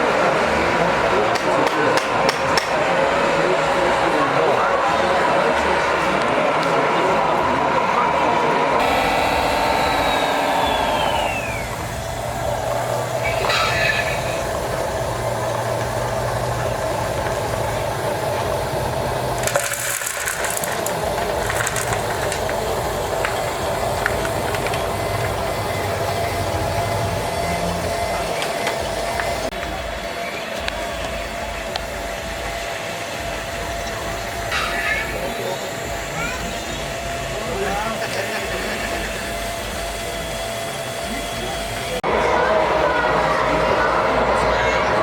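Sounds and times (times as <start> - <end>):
electric motors and gears whining: 0.0 - 45.0
higher whine falling in pitch: 4.3 - 15.1.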